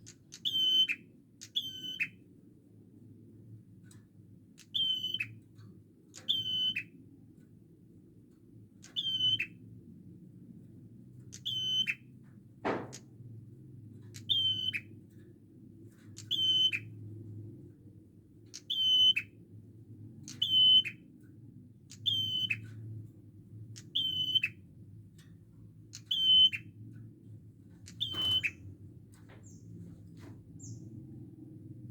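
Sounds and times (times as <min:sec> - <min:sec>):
sharp clicks: 0:23.7 - 0:24.4
bird calling: 0:27.9 - 0:28.6.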